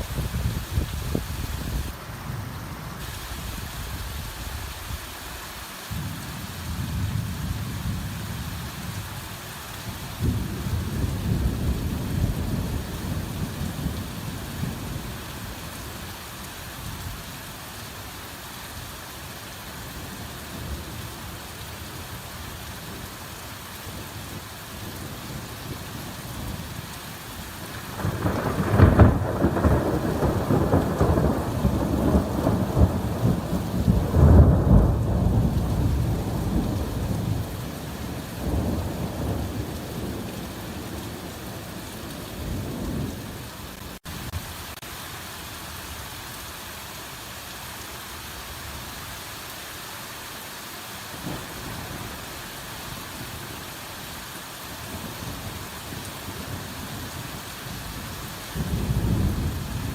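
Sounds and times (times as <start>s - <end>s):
hard rain falling: 0.0s - 59.9s
thunder rumbling: 27.6s - 43.8s, 58.6s - 59.9s.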